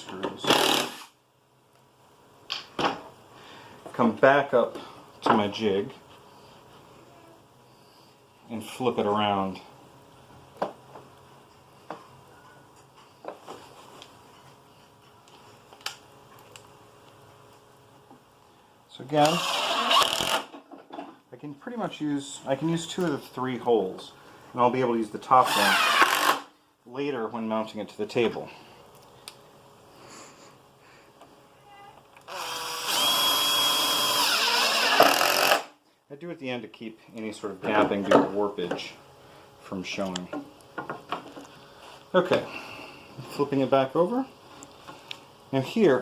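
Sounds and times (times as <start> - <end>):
power drill driving screw into wood: 0.4 - 1.2, 19.2 - 20.5, 25.4 - 26.5, 32.3 - 35.7.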